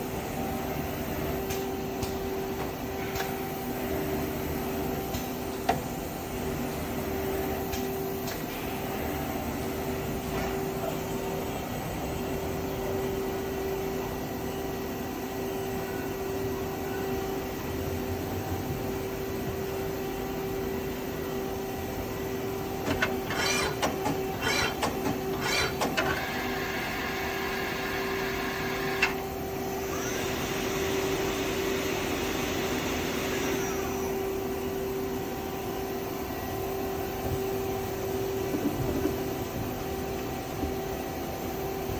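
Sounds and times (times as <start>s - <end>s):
machine humming: 21.9s - 34.4s
brief machine whine: 22.8s - 34.4s.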